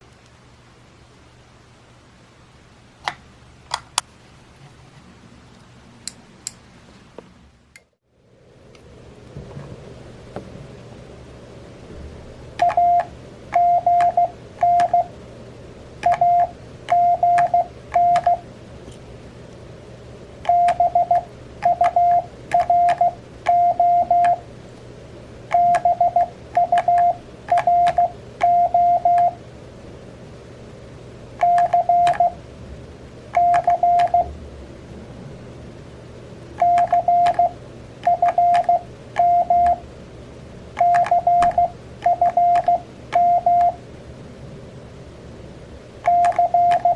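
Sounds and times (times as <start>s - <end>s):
morse code beeps: 12.6s - 15.1s, 16.0s - 18.4s, 20.5s - 24.4s, 25.5s - 29.4s, 31.4s - 32.4s, 33.4s - 34.3s, 36.6s - 39.8s, 40.8s - 43.8s, 46.1s - 46.9s.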